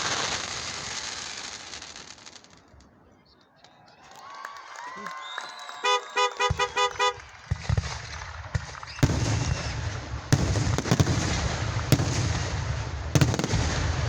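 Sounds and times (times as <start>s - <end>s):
fireworks sharp bangs: 0.0s - 3.0s, 5.8s - 14.0s
fireworks crackling rumble: 0.0s - 3.7s, 5.0s - 14.0s.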